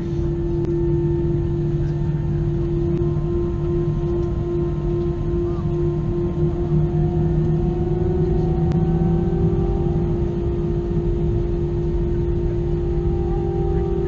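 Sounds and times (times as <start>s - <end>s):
jet engine hum in cabin: 0.0s - 14.0s.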